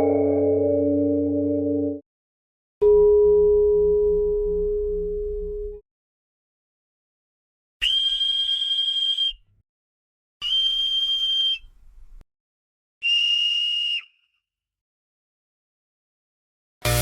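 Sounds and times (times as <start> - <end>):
whistle blasts: 7.8 - 9.4, 10.4 - 11.7, 13.0 - 14.4.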